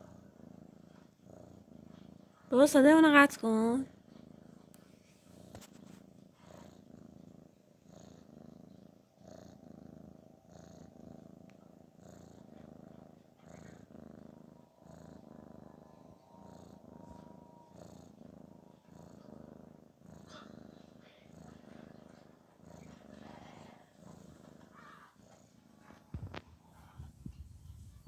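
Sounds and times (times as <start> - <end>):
cat purring: 0.0 - 28.0.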